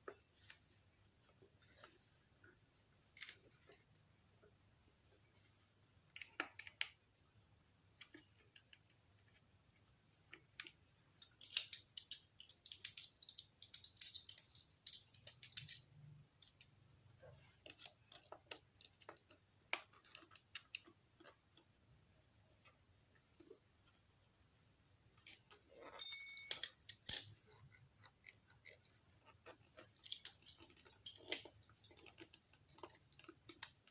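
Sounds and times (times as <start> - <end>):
hands clicking and tapping on parts: 7.9 - 21.8, 25.0 - 33.9.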